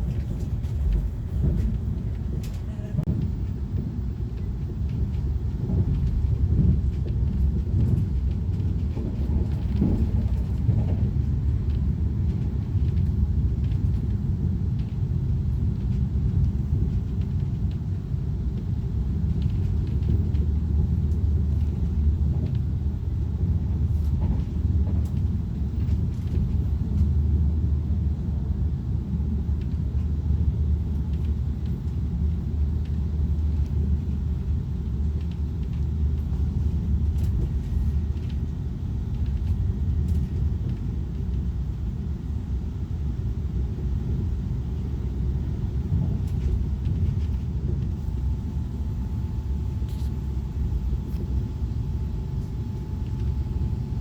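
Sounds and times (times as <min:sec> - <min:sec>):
train low rumble: 0:00.0 - 0:54.0
faint clicks and rattles: 0:04.3 - 0:17.9, 0:30.9 - 0:41.6.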